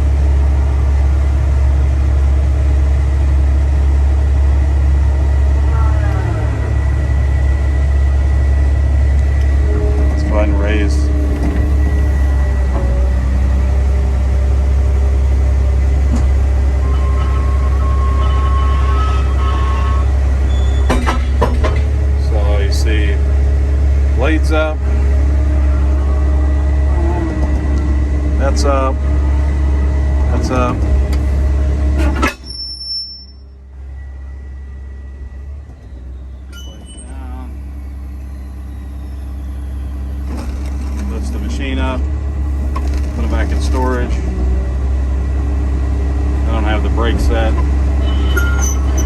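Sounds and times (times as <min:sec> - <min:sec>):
excavator diesel engine running: 0:00.0 - 0:49.0
hydraulic whine: 0:00.0 - 0:49.0
higher steady tone: 0:05.4 - 0:14.3.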